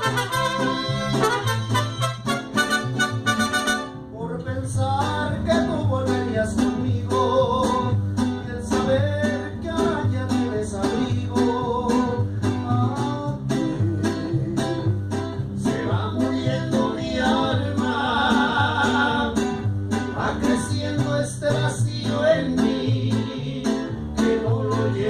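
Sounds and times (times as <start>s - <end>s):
trumpets holding a chord: 0.0s - 4.0s
bass: 0.0s - 25.0s
strummed guitars: 0.0s - 25.0s.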